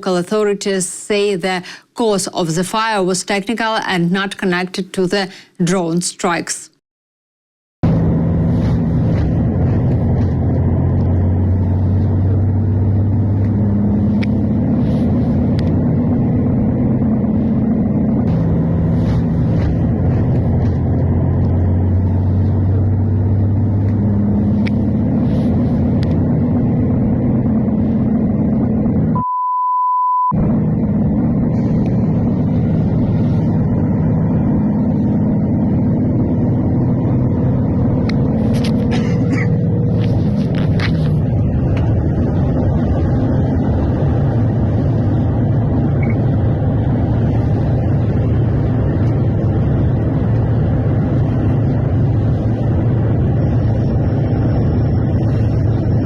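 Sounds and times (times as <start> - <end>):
loud rumbling with low hum: 7.8 - 29.3, 30.2 - 56.0
high beep: 29.2 - 30.4.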